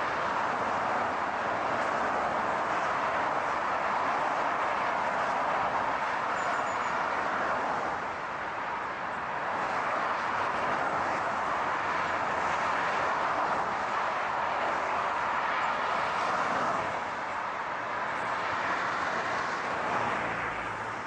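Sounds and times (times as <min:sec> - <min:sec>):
road and tyre noise: 0:00.0 - 0:21.0.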